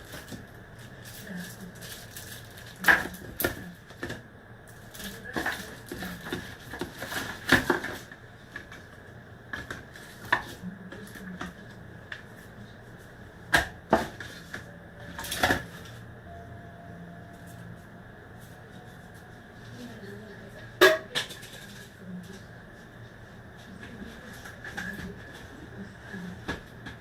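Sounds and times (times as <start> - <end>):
faint steady high tone: 14.5 - 19.9.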